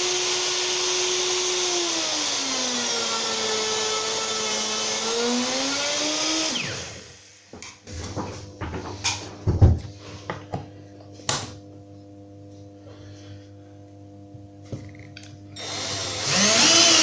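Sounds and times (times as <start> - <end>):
power drill spinning: 0.0 - 7.6, 15.6 - 17.0.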